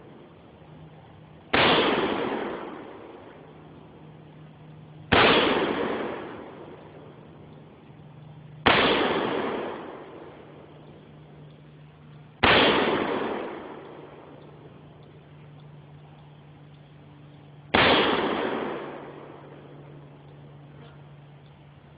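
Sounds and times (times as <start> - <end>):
rifle shots: 1.5 - 3.6, 5.0 - 7.4, 8.6 - 11.2, 12.4 - 14.9, 17.7 - 20.1.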